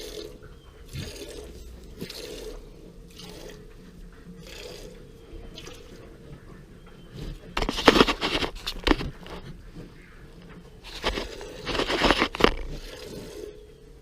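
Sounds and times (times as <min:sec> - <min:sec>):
close rustling and crinkling: 0:05.9 - 0:13.5.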